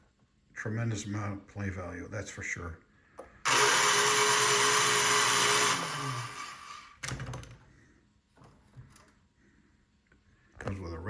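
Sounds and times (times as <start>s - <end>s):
electric motor running: 3.5s - 6.9s.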